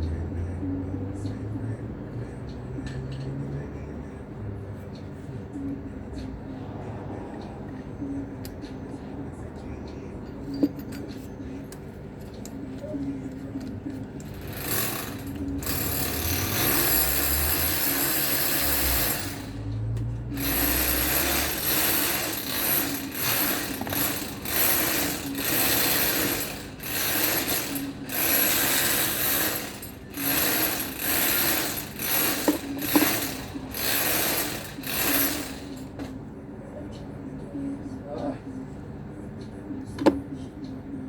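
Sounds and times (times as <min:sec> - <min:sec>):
ratchet wrench clicking: 0:14.2 - 0:35.8.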